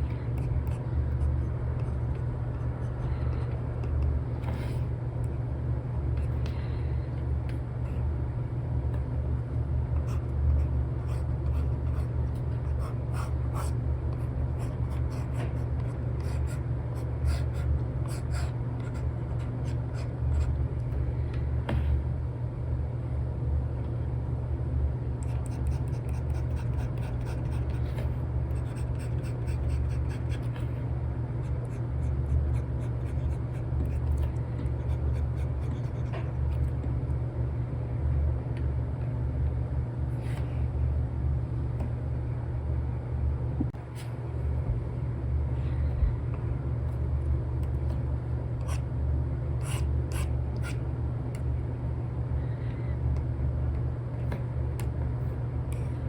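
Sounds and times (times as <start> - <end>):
steady low rumble: 0.0 - 56.0
stylus scratching on screen: 10.0 - 20.6, 25.2 - 30.8, 31.4 - 36.7, 49.6 - 50.8.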